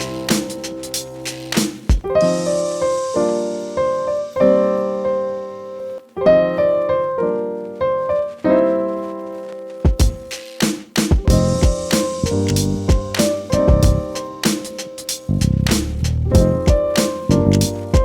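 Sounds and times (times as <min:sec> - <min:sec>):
piano chords ringing: 0:00.0 - 0:10.4, 0:11.3 - 0:15.5, 0:16.3 - 0:18.0.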